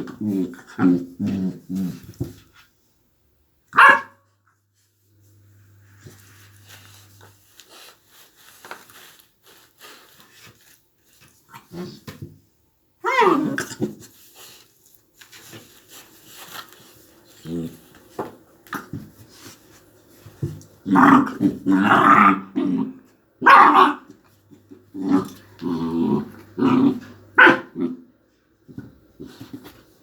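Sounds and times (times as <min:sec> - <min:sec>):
puppy growling and barking: 0:13.0 - 0:13.9, 0:20.8 - 0:28.1.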